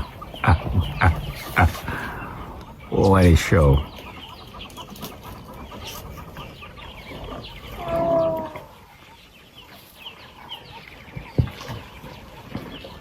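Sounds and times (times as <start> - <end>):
drawn-out bird call: 0.0 - 9.3.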